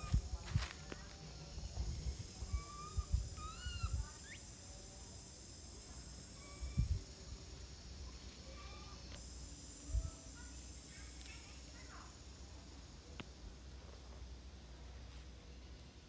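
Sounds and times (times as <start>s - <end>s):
baby monkey squeaking cries: 2.5s - 4.4s.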